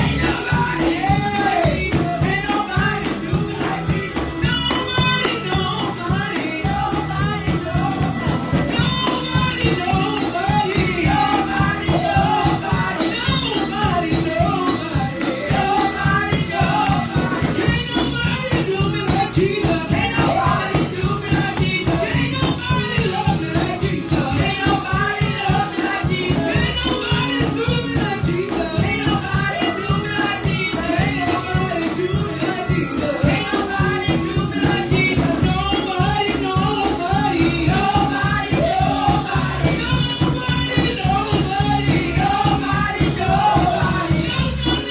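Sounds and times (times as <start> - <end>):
tambourine shaken: 0.0 - 44.9
voices singing together: 0.0 - 44.9.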